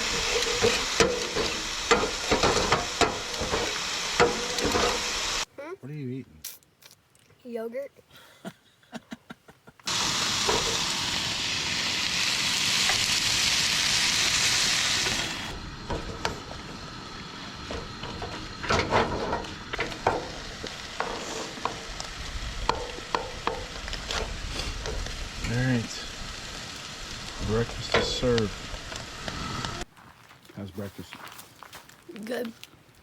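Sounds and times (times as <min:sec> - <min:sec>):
stirring clicks and scrapes: 0:00.0 - 0:05.0
food sizzling in a frying pan: 0:00.0 - 0:05.5, 0:09.9 - 0:29.9.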